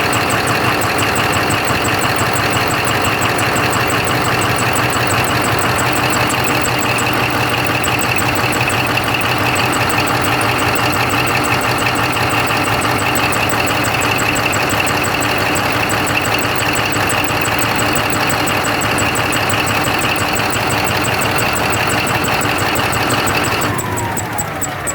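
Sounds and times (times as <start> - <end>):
diesel engine idling: 0.0 - 24.9
fast regular ticking: 0.0 - 24.9.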